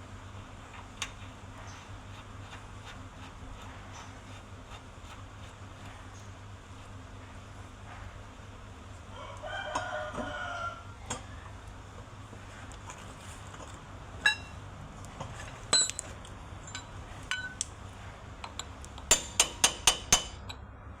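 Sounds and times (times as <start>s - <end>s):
rooster crowing: 9.1s - 11.1s.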